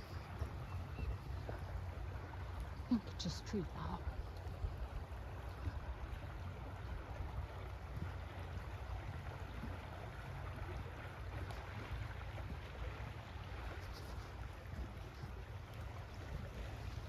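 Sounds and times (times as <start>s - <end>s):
river water rushing: 0.0s - 7.2s
wind rumble on microphone: 3.6s - 17.0s.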